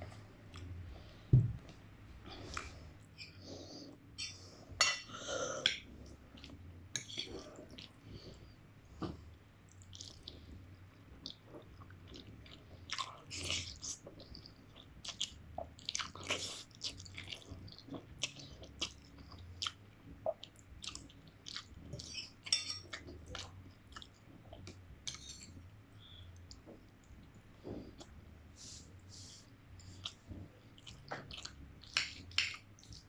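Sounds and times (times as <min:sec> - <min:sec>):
person chewing noodles: 0:05.6 - 0:08.4, 0:09.7 - 0:28.2, 0:29.7 - 0:33.0.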